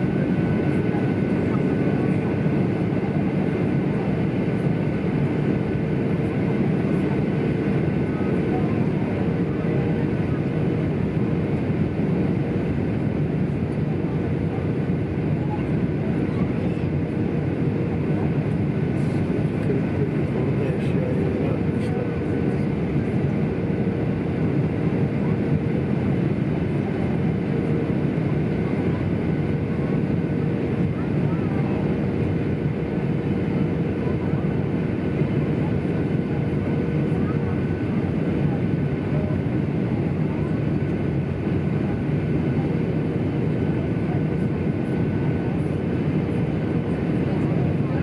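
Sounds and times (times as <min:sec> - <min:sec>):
faint steady whines: 0:00.0 - 0:48.0
jet engine and airflow rumble: 0:00.0 - 0:48.0.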